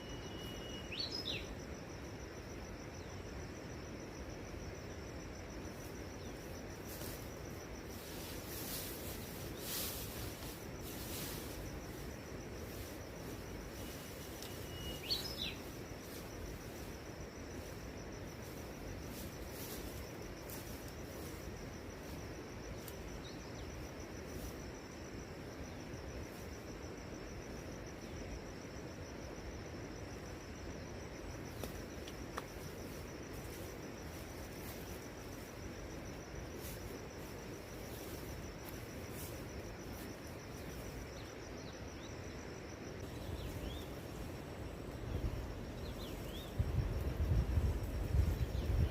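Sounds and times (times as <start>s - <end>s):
bird chirp: 0.0s - 1.5s, 14.6s - 15.7s
insects trilling: 0.0s - 48.9s
soft even hiss: 0.0s - 48.9s.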